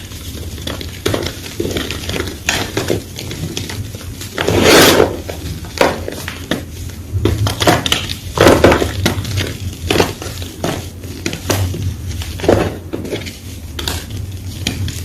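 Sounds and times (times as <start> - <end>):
chalk crunching: 0.0 - 7.0.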